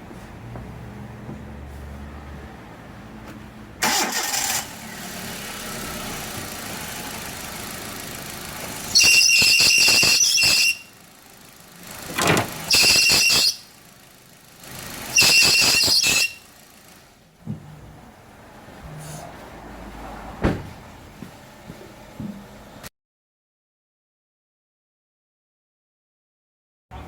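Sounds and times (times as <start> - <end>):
power steering squealing: 3.8 - 4.6, 8.7 - 11.0, 12.0 - 13.8, 14.8 - 16.5
car engine running: 4.6 - 15.2, 16.3 - 18.4.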